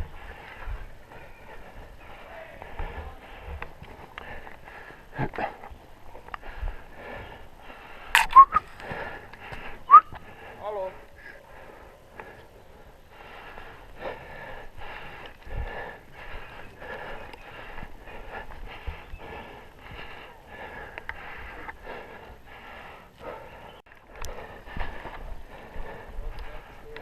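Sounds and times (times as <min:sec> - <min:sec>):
person breathing heavily: 0:00.0 - 0:27.0.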